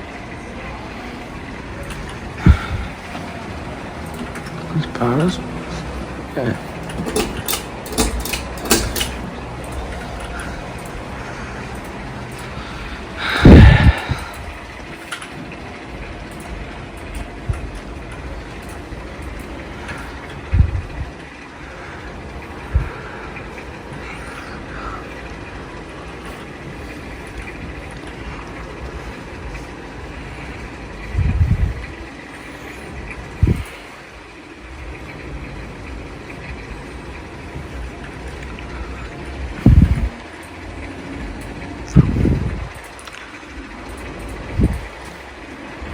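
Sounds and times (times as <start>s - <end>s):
ceiling fan whirring: 0.0s - 45.9s
low rumble: 9.1s - 15.0s, 15.6s - 32.2s, 37.5s - 40.2s.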